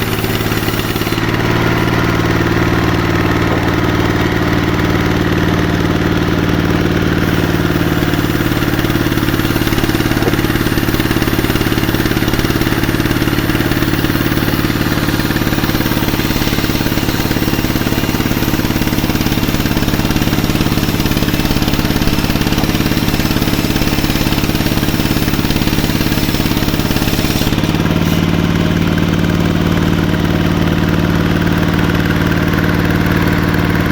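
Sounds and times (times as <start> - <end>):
hiss: 0.0 - 1.3, 7.2 - 28.6
sawmill engine running: 0.0 - 33.9.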